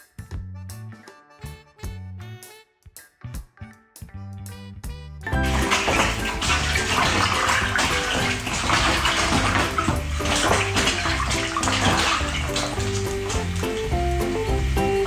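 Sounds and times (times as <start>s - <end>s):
background music: 0.0s - 15.0s
water running and splashing: 5.3s - 15.0s.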